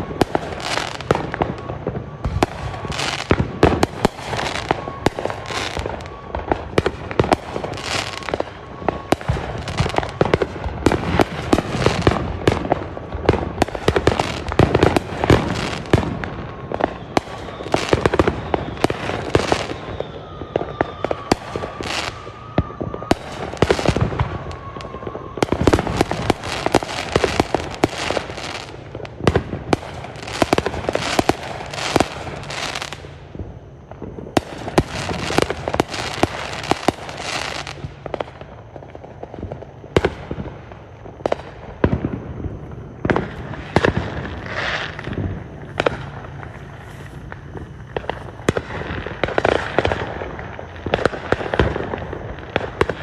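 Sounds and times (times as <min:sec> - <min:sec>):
fireworks bangs and crackles: 0:00.0 - 0:53.0.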